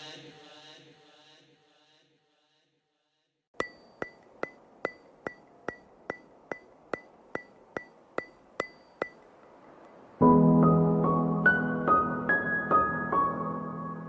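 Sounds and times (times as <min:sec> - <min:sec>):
metronome-like ticking: 0:03.6 - 0:10.0
background music with piano: 0:10.2 - 0:14.0.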